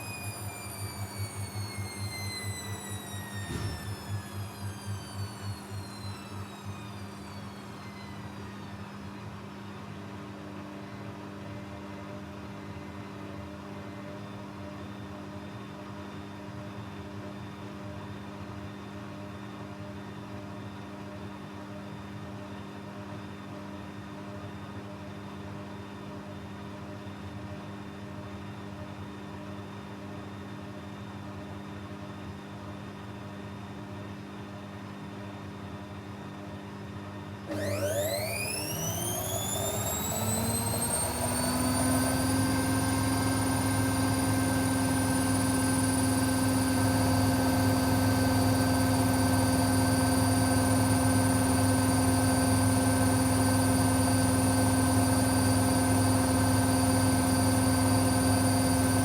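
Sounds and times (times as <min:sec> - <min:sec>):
washing machine motor hum with whine: 0:00.0 - 0:59.0.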